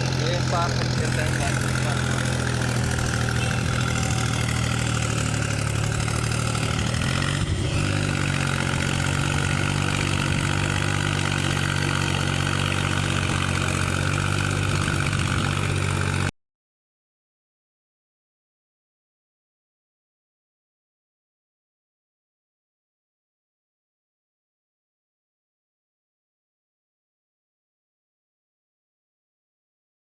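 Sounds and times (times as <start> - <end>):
tractor diesel engine running: 0.0 - 16.3.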